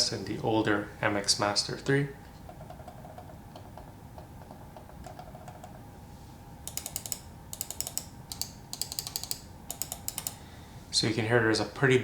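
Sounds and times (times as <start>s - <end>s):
computer mouse buttons clicking: 6.6s - 10.4s.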